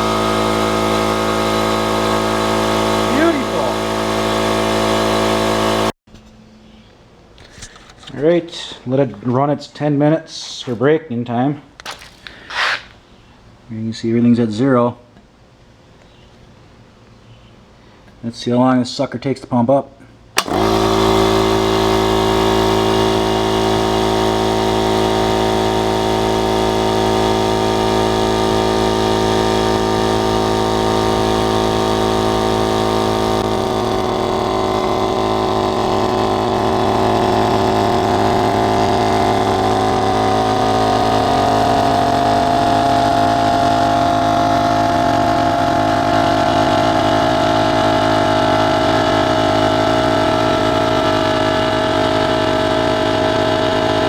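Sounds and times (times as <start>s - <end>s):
electric air compressor running: 0.0s - 6.0s, 11.8s - 13.0s, 20.4s - 54.0s.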